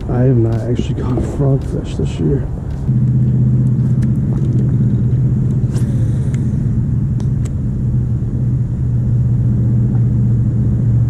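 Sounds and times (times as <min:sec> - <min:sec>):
faint clicks: 0:02.6 - 0:03.0.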